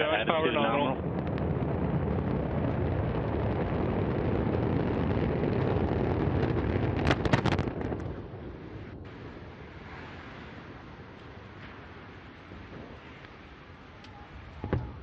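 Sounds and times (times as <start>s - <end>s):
rocket launch rumble: 0.0s - 15.0s
sharp cracks: 1.0s - 8.3s.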